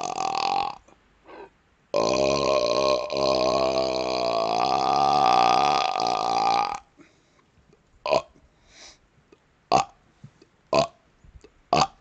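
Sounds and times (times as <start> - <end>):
man burping: 0.0 - 0.8, 1.9 - 7.0, 11.7 - 12.0.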